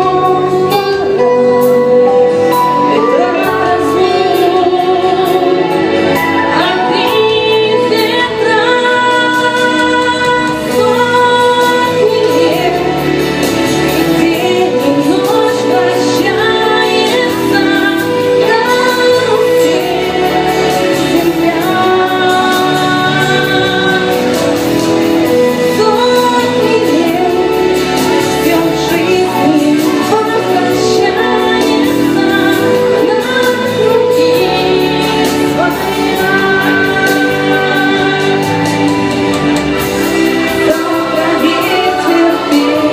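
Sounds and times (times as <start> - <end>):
instrumental accompaniment: 0.0 - 42.9
woman singing: 0.0 - 42.9.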